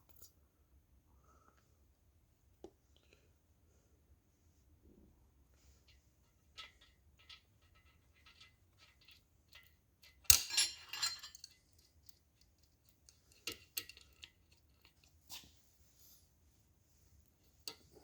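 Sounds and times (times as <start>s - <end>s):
small metal tools clinking: 7.2s - 12.2s.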